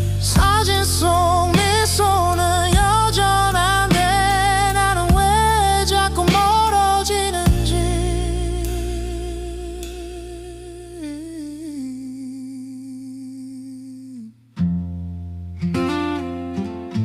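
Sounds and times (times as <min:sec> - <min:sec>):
acoustic guitar accompaniment: 0:00.0 - 0:11.9, 0:14.1 - 0:17.0.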